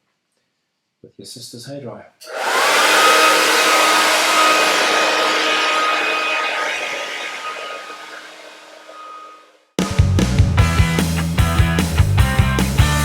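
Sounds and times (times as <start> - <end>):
hair dryer running: 2.2 - 9.5.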